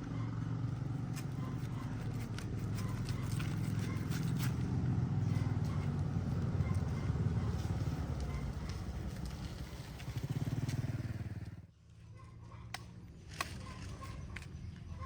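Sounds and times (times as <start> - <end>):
small motorcycle engine running: 0.0 - 11.7.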